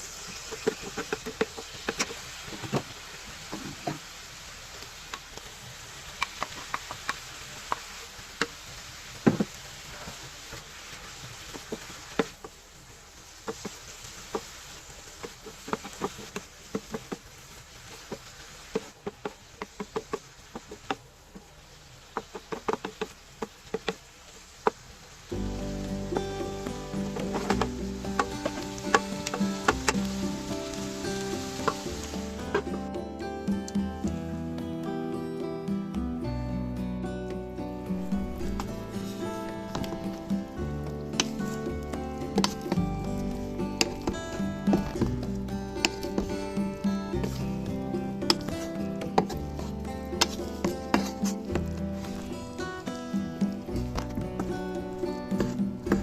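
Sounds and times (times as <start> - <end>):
frying sizzle: 0.0 - 35.2, 36.6 - 56.0
utensil clacking against pan: 40.9 - 52.2.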